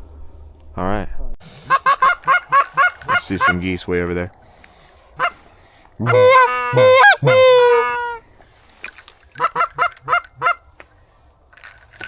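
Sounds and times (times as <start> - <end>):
goose call honks: 1.7 - 3.6, 5.2 - 5.4, 6.0 - 8.2, 9.4 - 10.6
goose call short clucks: 6.0 - 8.2, 9.4 - 10.6.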